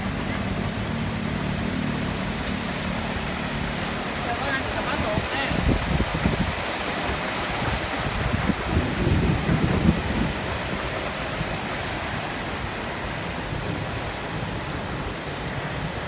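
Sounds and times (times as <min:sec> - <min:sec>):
heavy rain falling: 0:00.0 - 0:16.0.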